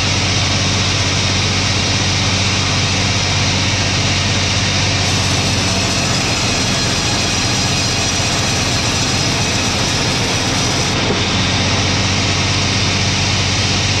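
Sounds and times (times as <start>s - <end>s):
log saw cutting wood: 5.0s - 12.4s.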